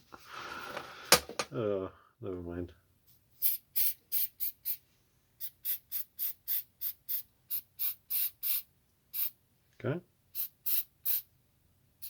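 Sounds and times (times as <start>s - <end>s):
aerosol spray squirts: 10.4s - 11.2s.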